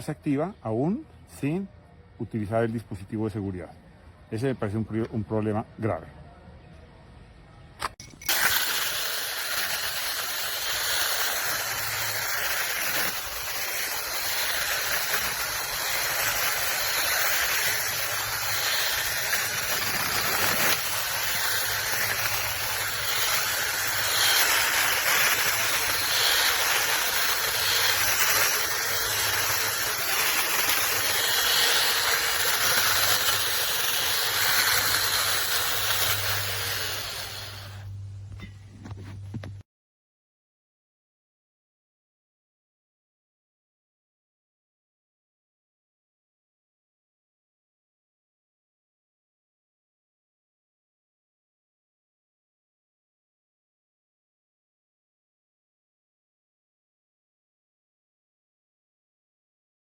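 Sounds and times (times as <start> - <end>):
electric chainsaw whirring: 8.2 - 38.0
faint low motor hum: 34.8 - 39.6.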